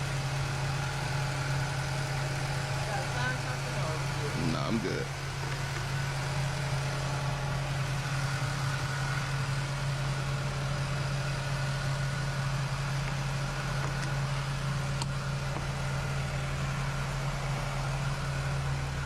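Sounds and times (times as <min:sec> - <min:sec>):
vehicle engine idling: 0:00.0 - 0:19.0.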